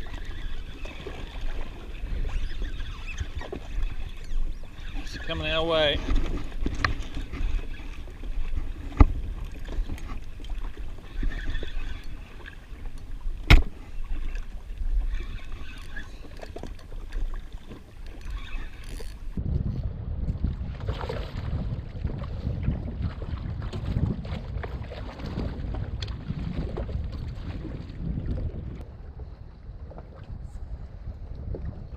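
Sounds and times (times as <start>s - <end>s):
water lapping against hull: 0.0s - 31.9s
wind buffeting microphone: 0.0s - 31.9s.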